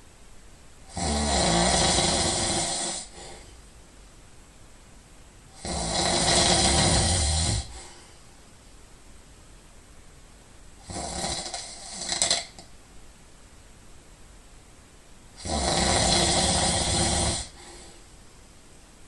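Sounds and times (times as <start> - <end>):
person snoring: 0.9 - 3.5, 5.5 - 8.0, 10.8 - 12.6, 15.4 - 18.0.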